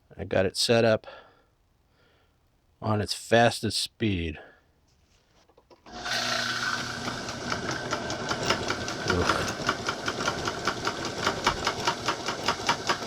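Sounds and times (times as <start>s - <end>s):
lathe motor humming: 5.9s - 13.0s
regular rattling knocks: 7.4s - 13.0s.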